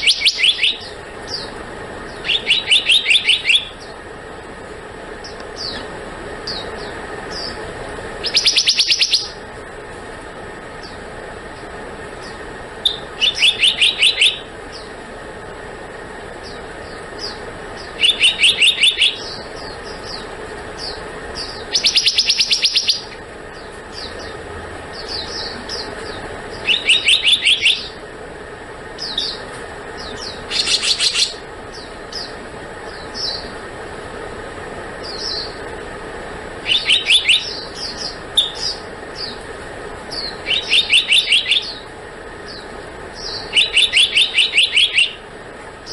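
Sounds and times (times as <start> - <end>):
bird calling rapid high notes: 0.0 - 4.0, 8.2 - 9.4, 12.8 - 14.5, 16.5 - 23.2, 23.9 - 28.0, 30.0 - 32.4, 36.6 - 39.4, 40.1 - 45.3.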